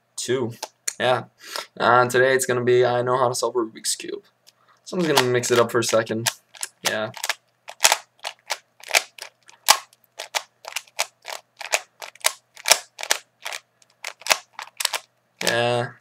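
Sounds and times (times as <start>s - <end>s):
puzzle cube twisting clicks: 5.0s - 15.6s.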